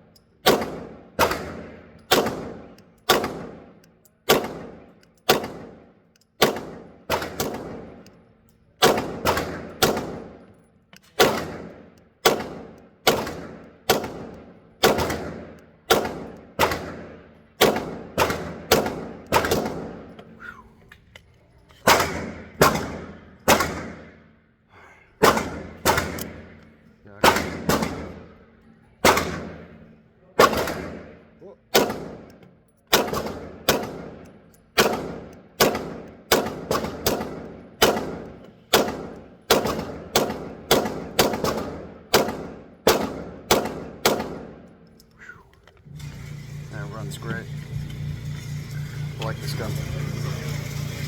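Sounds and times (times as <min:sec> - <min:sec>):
pistol shots echoing: 0:00.4 - 0:08.2, 0:08.8 - 0:20.2, 0:21.8 - 0:24.4, 0:25.2 - 0:29.8, 0:30.4 - 0:44.8.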